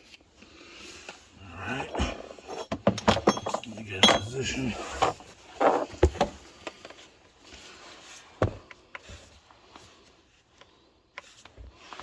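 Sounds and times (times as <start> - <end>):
tools and copper pipe knocking: 2.6 - 4.3.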